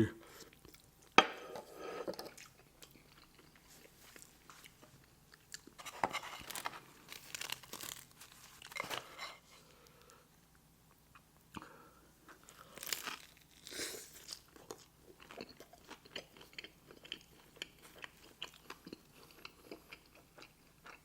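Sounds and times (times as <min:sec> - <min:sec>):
person chewing food: 0:00.4 - 0:10.2, 0:11.1 - 0:21.0.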